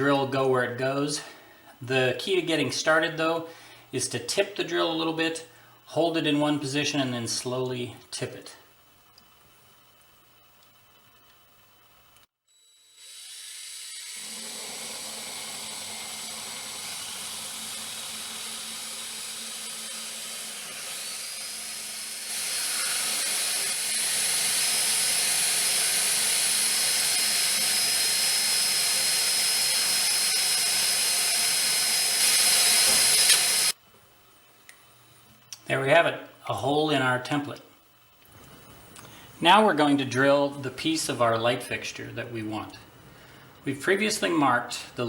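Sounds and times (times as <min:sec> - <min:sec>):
drill motor whine: 0:12.5 - 0:33.8.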